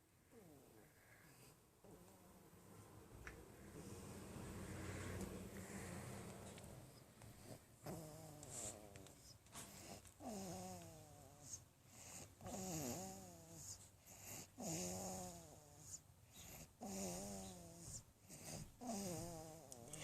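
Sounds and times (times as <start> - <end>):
baby snoring: 4.4 - 20.0.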